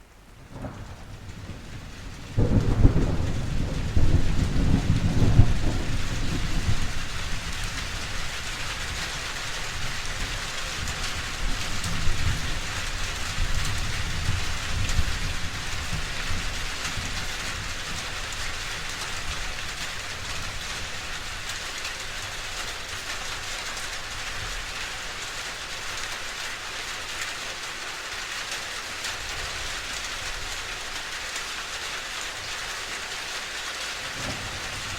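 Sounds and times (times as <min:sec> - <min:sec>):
steady rain falling: 0:00.0 - 0:34.9
faint thunder rumble: 0:00.4 - 0:22.2, 0:34.0 - 0:34.9
thunder clap: 0:00.5 - 0:09.2, 0:10.1 - 0:20.6, 0:34.0 - 0:34.9.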